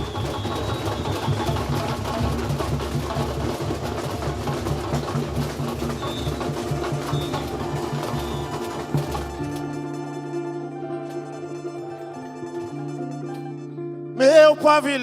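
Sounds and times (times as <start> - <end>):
high whistle notes: 0.0 - 2.2, 5.8 - 13.6
samba drums playing: 0.0 - 10.3.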